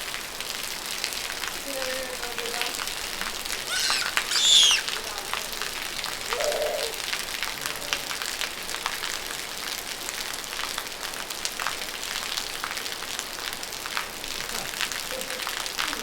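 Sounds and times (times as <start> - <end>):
steady rainfall: 6.9 - 16.0.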